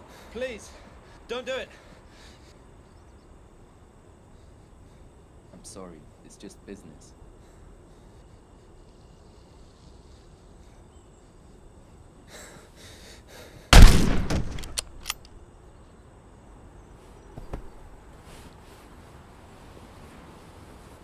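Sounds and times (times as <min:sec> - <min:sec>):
loud shotgun blast: 0:13.7 - 0:15.0
sharp clicks: 0:13.8 - 0:15.4.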